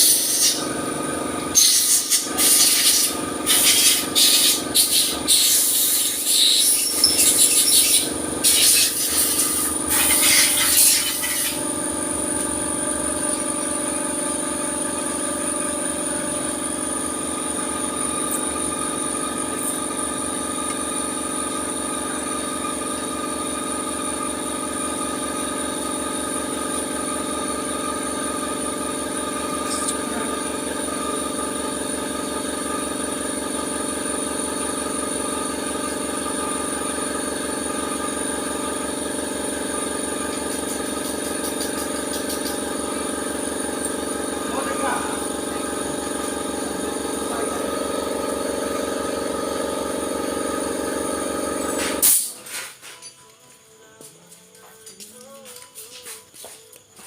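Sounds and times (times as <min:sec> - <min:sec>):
compressed air hissing blasts: 0:00.0 - 0:00.7, 0:01.6 - 0:11.6, 0:51.7 - 0:52.6
steady pulsing machine sound: 0:00.0 - 0:52.3.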